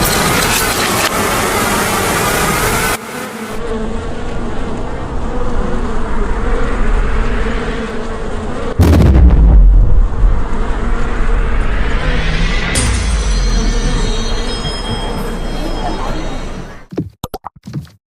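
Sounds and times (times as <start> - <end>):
bees buzzing: 0.0 - 8.9, 13.0 - 16.9
loud deep boom: 8.8 - 15.5.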